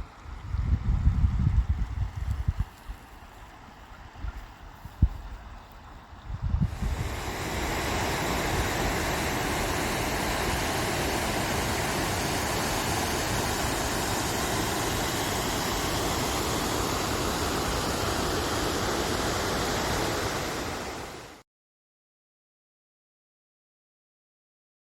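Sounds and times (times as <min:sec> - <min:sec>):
falling water rushing: 0:06.7 - 0:21.4.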